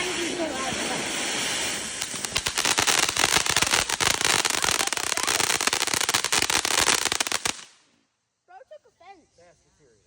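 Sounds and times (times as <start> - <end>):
fireworks crackling: 0.0 - 7.9
steady hiss: 0.0 - 10.0.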